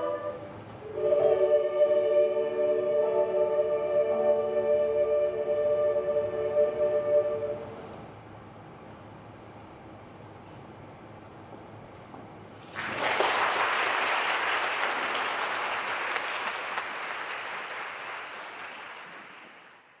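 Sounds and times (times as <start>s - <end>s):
audience applause: 12.6s - 20.0s.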